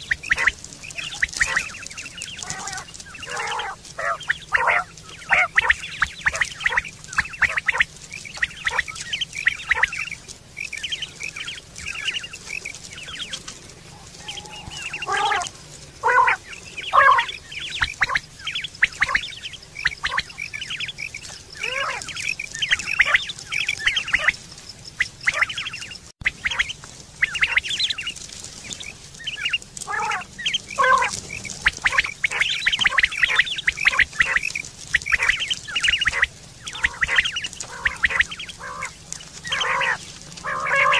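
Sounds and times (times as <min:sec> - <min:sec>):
quail flock calling: 0:00.0 - 0:40.9.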